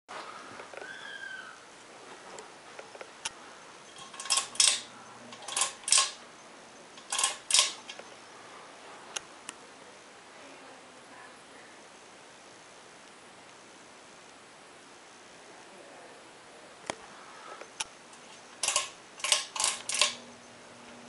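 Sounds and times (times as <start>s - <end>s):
chain ticking: 3.9s - 6.2s, 6.9s - 8.1s, 18.1s - 20.3s
pull-chain switch clicking: 3.9s - 6.2s, 7.0s - 8.0s, 18.6s - 20.2s.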